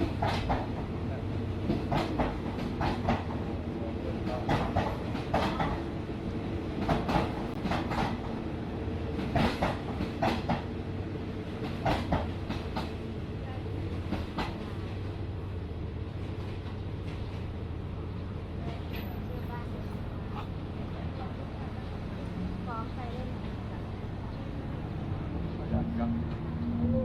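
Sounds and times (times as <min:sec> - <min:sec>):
train wheels clattering over rails: 0:00.0 - 0:03.6, 0:04.2 - 0:06.0, 0:06.7 - 0:08.4, 0:09.1 - 0:10.8, 0:11.4 - 0:13.1, 0:13.8 - 0:15.1.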